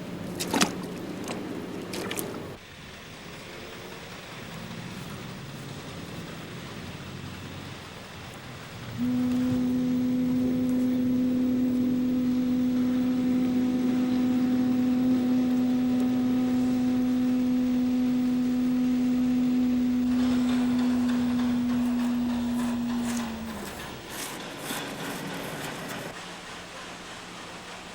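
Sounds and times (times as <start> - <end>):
ocarina long low note: 8.9 - 24.8.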